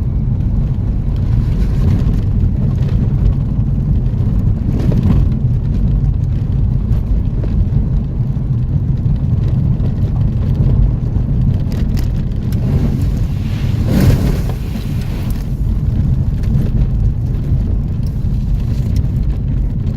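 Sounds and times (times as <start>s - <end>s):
vehicle engine rumble: 0.0s - 19.9s
rush of noise: 12.3s - 16.3s.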